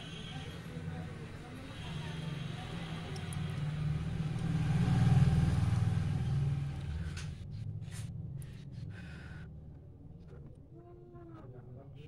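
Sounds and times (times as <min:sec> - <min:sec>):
vehicle engine passing by: 0:01.6 - 0:08.6.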